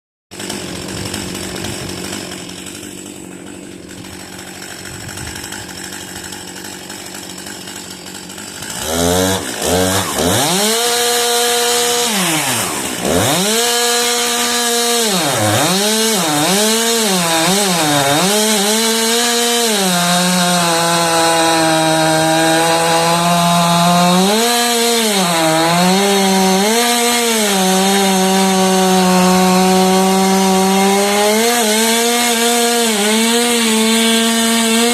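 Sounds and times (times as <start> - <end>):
chainsaw revving and cutting: 0.3 - 34.9.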